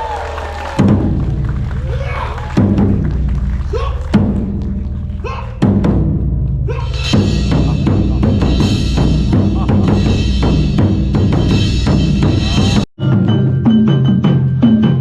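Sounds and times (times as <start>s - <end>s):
fast drumming: 0.6s - 15.0s.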